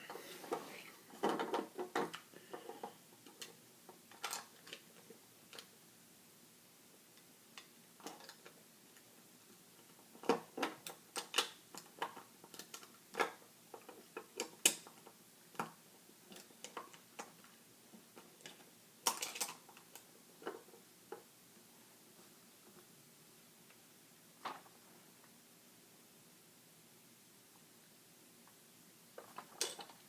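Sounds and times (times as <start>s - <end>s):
plastic bricks clicking and clattering: 3.2s - 5.7s, 7.6s - 9.1s, 9.8s - 17.5s, 18.1s - 20.7s, 29.2s - 30.0s.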